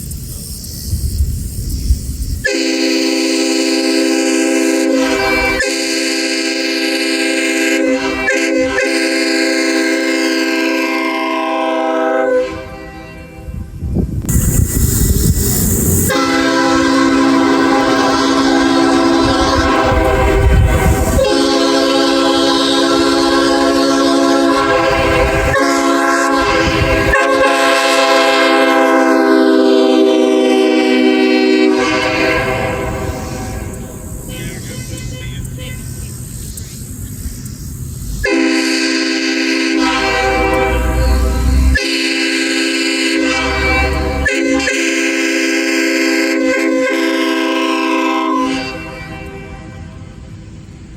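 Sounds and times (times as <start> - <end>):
train horn chord: 2.4 - 13.8, 16.0 - 35.9, 38.2 - 50.4.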